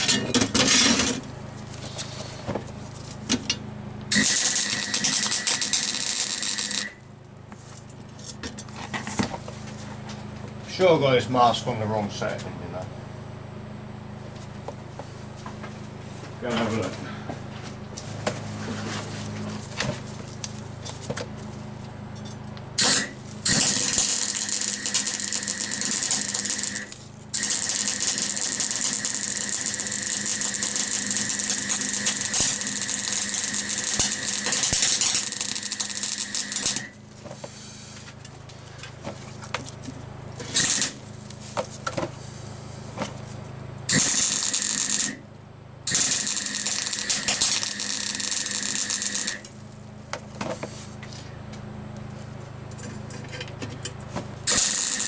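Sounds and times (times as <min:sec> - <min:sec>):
electric welder crackling hiss: 0:04.1 - 0:07.0, 0:22.8 - 0:38.1, 0:40.4 - 0:41.4, 0:43.9 - 0:45.2, 0:45.9 - 0:49.6, 0:54.4 - 0:55.0.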